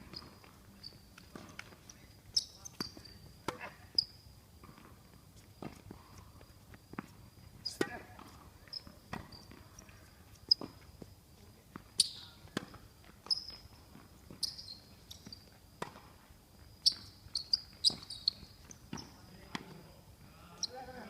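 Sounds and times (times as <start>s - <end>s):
faint high insect trill: 0.1s - 21.0s.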